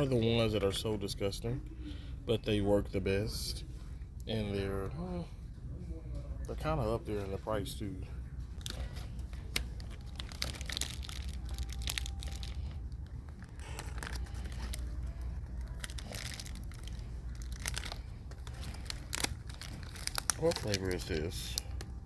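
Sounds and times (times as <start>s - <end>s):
steady low rumble: 0.0s - 22.0s
plastic packaging crinkling: 8.6s - 22.0s.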